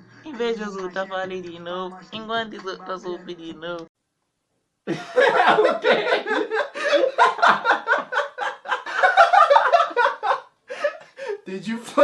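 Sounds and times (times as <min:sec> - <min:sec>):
man laughing loudly: 0:04.9 - 0:11.4.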